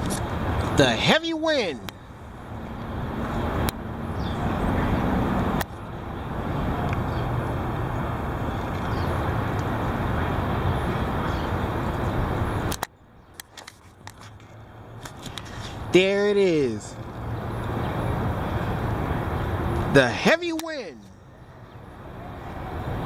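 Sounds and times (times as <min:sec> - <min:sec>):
strong wind buffeting microphone: 0:01.9 - 0:13.3.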